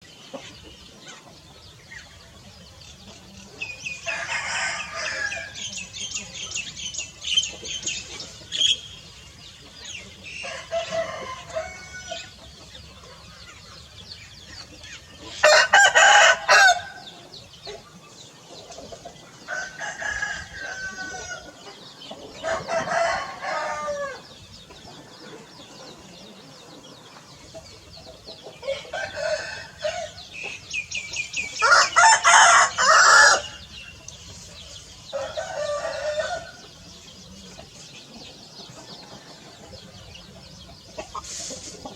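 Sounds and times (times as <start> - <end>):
roosters crowing: 3.4 - 7.8, 9.8 - 12.5, 15.2 - 17.4, 19.4 - 27.0, 28.5 - 34.0, 34.6 - 40.3.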